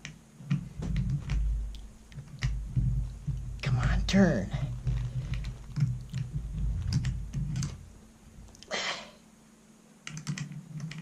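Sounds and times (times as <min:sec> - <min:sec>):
sharp breath of effort: 0:08.7 - 0:09.2.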